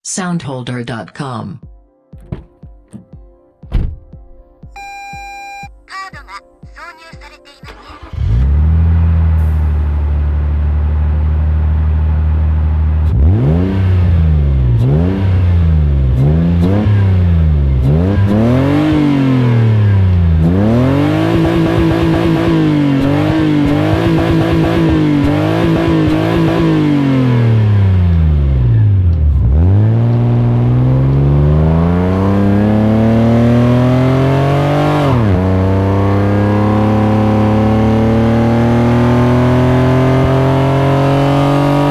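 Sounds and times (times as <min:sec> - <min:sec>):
car engine revving: 0:02.2 - 0:03.0, 0:07.7 - 0:41.9.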